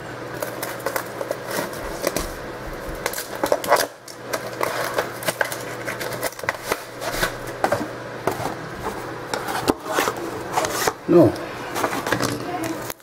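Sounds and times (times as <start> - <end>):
packaging crinkling: 0.3 - 9.0.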